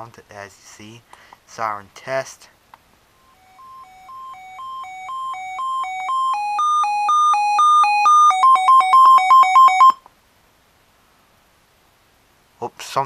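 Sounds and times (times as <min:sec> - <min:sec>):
radio alert siren two-tone beeping: 0:03.2 - 0:10.0.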